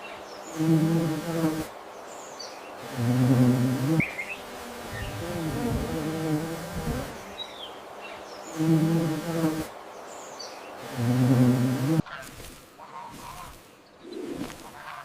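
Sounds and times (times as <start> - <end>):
flying insect buzzing: 0.5 - 1.7, 2.8 - 7.5, 8.5 - 9.8, 10.7 - 12.5.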